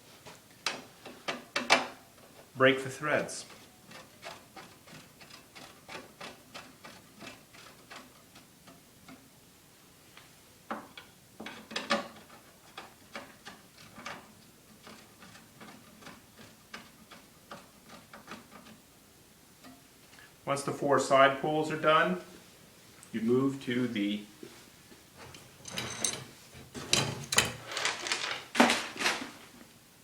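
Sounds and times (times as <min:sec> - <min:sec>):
pole screwing clicks: 0:03.5 - 0:09.2.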